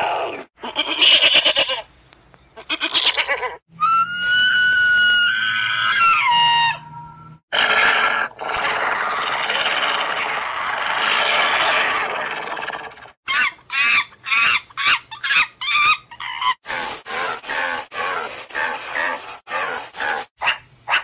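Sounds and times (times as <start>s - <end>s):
rapid repeated animal calls: 7.5s - 21.0s
steady animal noise: 7.5s - 21.0s.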